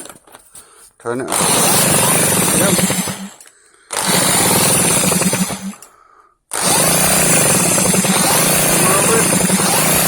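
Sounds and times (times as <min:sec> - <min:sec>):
power drill running: 0:01.3 - 0:05.9, 0:06.5 - 0:10.0.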